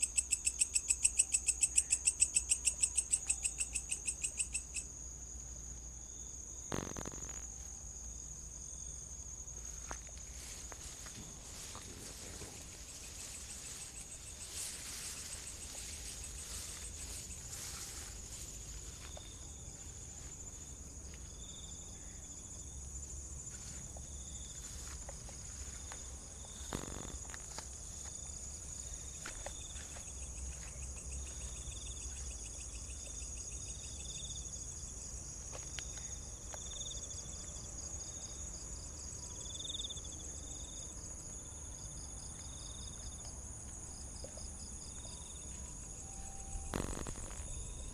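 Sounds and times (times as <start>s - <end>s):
high-pitched insect buzz: 0.0s - 5.0s, 6.1s - 7.8s, 12.6s - 19.4s, 26.4s - 27.6s, 45.2s - 47.9s
crickets chirping: 0.0s - 47.9s.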